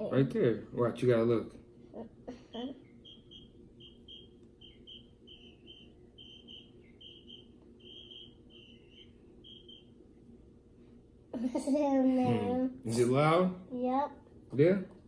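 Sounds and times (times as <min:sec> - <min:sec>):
low steady hum: 0:00.0 - 0:15.0
faint high-pitched chirps: 0:02.6 - 0:10.3.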